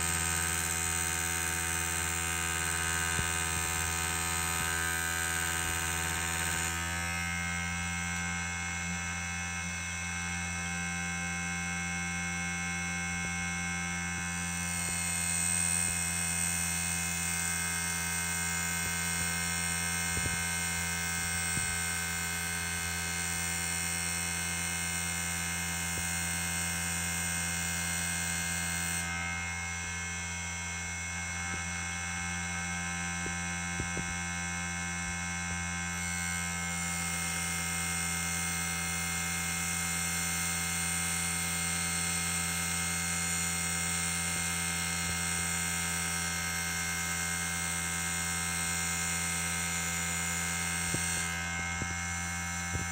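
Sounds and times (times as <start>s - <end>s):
lathe motors humming and whining: 0.0s - 11.1s, 47.3s - 52.9s.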